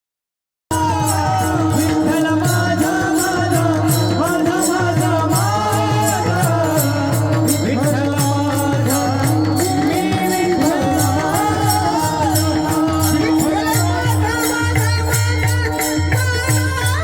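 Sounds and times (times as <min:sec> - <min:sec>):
drum beat: 0:00.7 - 0:16.7
devotional singing in high voice: 0:00.7 - 0:17.0
steady drone: 0:01.4 - 0:14.6.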